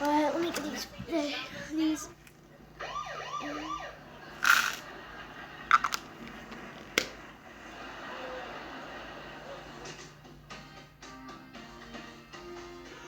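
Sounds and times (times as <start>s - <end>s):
wavering siren-like wail: 2.8s - 4.0s
plastic toys rustling and clicking: 4.4s - 4.9s.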